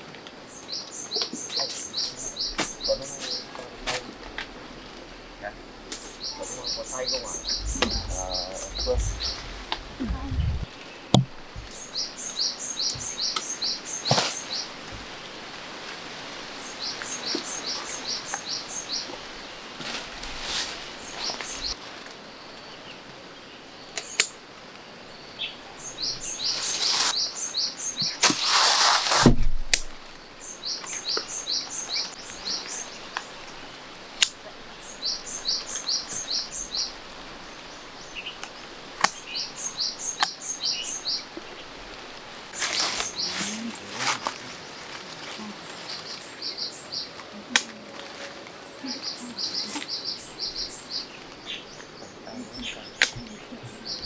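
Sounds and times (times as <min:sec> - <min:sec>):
outdoor background: 0:00.0 - 0:54.0
loud noisy burst: 0:03.8 - 0:10.7.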